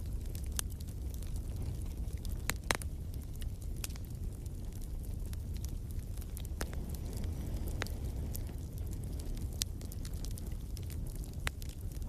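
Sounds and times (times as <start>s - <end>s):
wood fire crackling: 0.0s - 12.0s.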